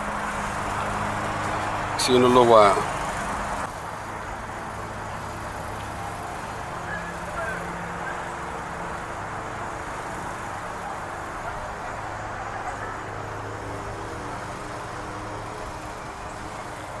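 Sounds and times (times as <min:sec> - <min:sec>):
vehicle engine and road noise: 0:00.0 - 0:17.0.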